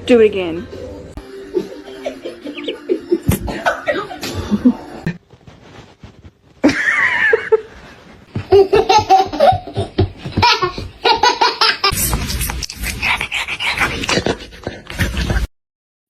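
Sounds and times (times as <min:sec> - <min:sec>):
person laughing hard: 0:01.5 - 0:05.2, 0:06.6 - 0:07.8.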